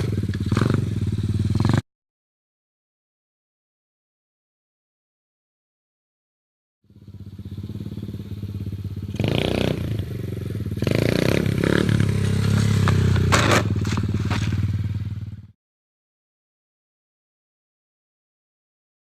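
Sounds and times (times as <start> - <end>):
motorbike engine revving: 0.0 - 1.8, 6.9 - 15.6.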